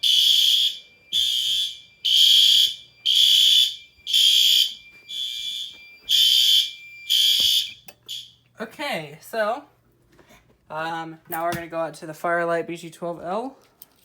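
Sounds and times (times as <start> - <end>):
fire alarm horns: 0.0 - 8.5.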